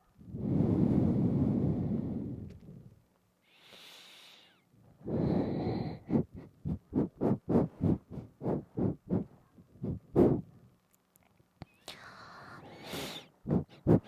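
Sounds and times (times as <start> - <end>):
person breathing through nose: 3.4 - 6.6, 11.8 - 14.0
quick sniffs: 3.5 - 4.6, 12.6 - 14.0.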